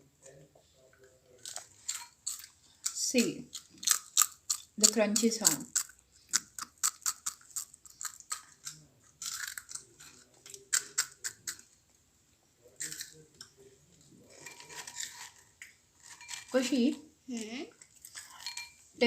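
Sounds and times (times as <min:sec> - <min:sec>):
cereal crunching: 0:01.4 - 0:11.7.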